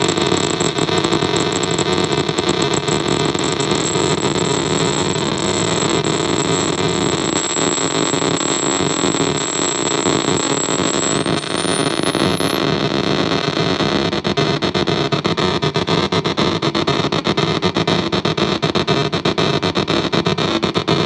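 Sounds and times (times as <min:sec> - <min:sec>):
thin high whine: 0:00.0 - 0:13.7
glitchy electronic buzzing: 0:00.0 - 0:14.2.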